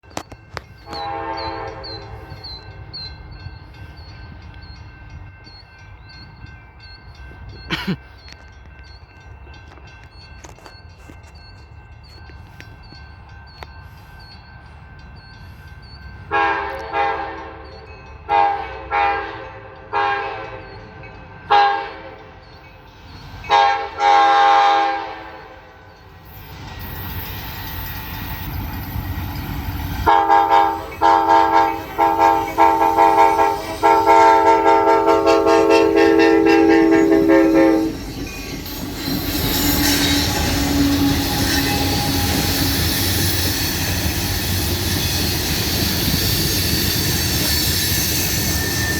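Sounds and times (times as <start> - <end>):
train rumbling past: 0.0 - 48.9
locomotive air horn: 0.8 - 2.4, 16.3 - 17.6, 18.3 - 20.6, 21.5 - 22.2, 23.5 - 25.8, 30.1 - 38.0, 39.6 - 42.9.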